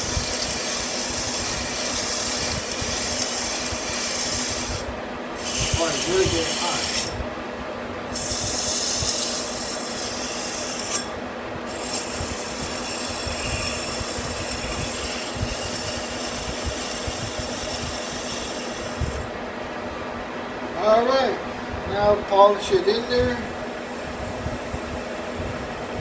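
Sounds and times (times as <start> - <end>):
lathe cutting tool hissing on steel: 0.0 - 7.2, 8.1 - 11.1, 11.7 - 19.3
lathe machine hum: 0.0 - 7.2, 8.1 - 19.4.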